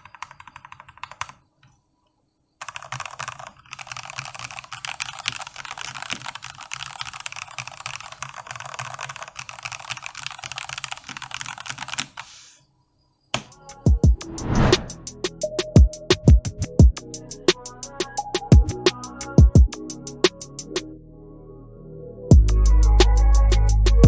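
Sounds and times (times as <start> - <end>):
fast typing on keyboard: 0.0 - 1.4, 2.6 - 12.3.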